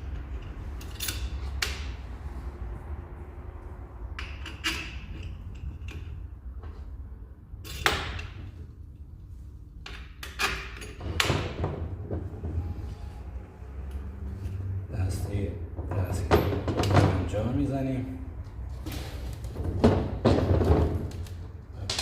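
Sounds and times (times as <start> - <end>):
metal parts clicking and knocking: 0.0 - 2.0, 4.1 - 6.3, 9.8 - 11.6.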